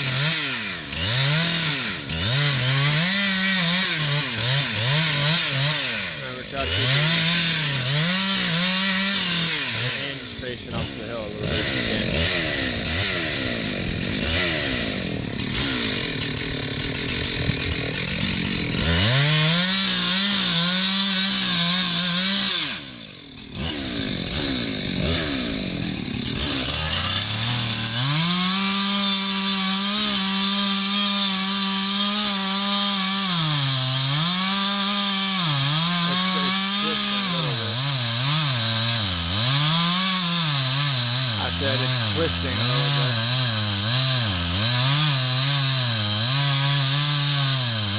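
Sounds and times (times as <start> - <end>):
chainsaw cutting wood: 0.0 - 47.9.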